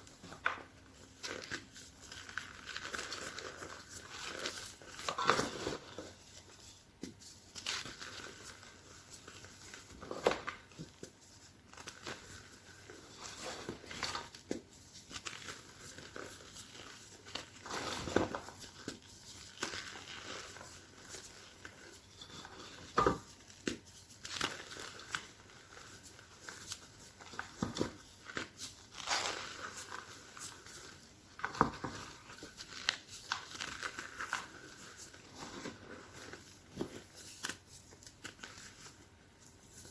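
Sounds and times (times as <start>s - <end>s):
chalk crunching and squeaking: 11.7s - 38.9s.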